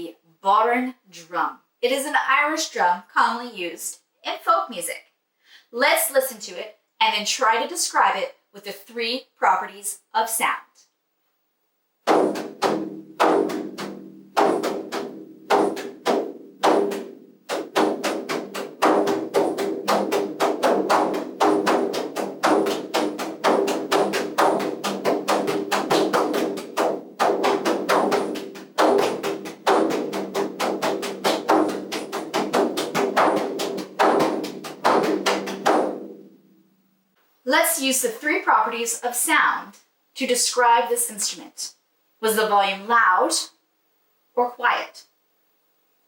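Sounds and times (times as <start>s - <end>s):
frame drum strikes: 12.0s - 36.8s.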